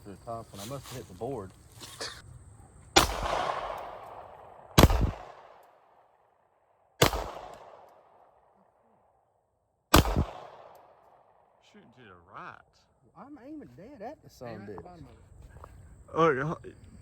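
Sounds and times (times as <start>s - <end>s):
handgun shots: 3.0s - 5.8s, 7.0s - 8.2s, 9.9s - 11.1s.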